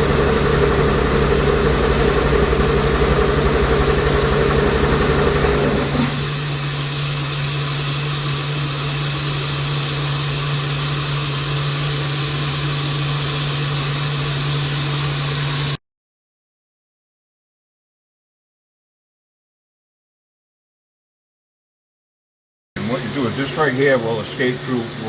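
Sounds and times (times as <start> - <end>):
mid-pitched pulsing machine tone: 0.0 - 15.7
milling machine hum and hiss: 0.0 - 15.8, 22.8 - 25.0.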